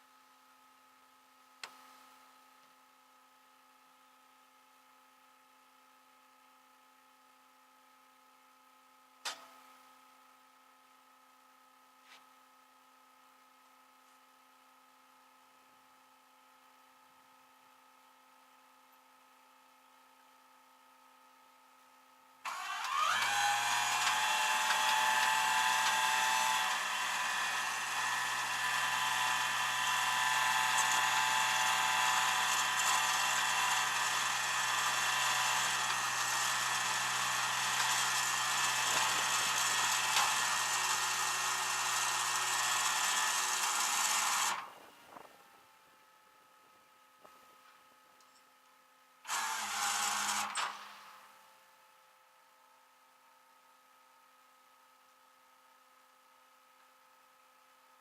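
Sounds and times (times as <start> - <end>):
faint steady hum: 44.6 - 49.3.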